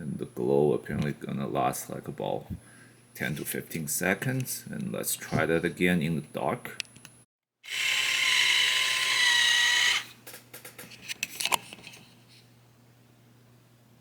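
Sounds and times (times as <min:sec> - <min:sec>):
loud buzzy drill-like toy sound: 0:07.6 - 0:10.2.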